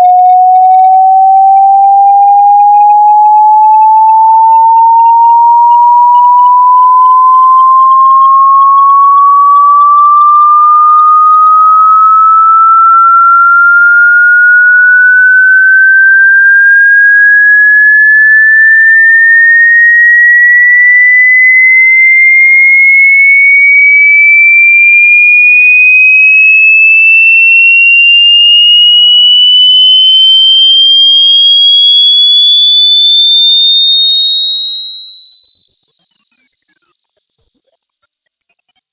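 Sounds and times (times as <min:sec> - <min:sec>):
rising electronic tone sweep: 0:00.0 - 0:19.3.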